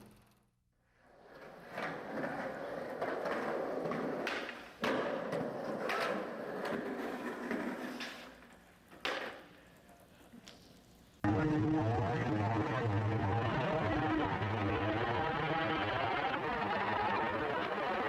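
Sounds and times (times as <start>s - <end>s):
skateboard wheels rolling on concrete: 1.0s - 11.2s.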